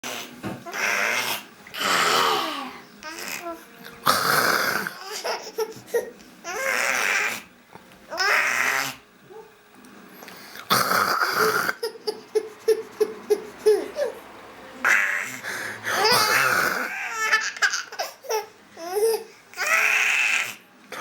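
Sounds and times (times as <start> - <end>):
baby growling: 0.0 - 7.5, 8.1 - 9.0, 10.7 - 14.2, 14.8 - 21.0
baby laughing: 4.9 - 7.5, 11.4 - 15.4, 16.0 - 20.6.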